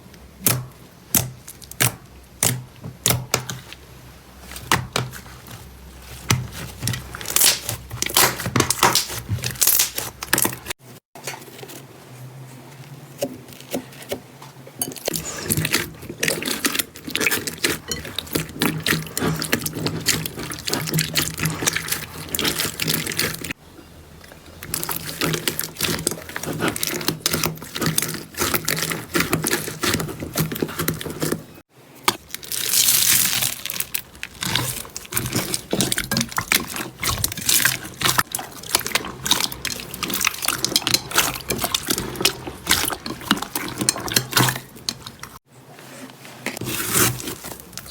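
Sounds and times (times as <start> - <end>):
slime squishing and popping: 6.4 - 10.5, 32.2 - 44.4.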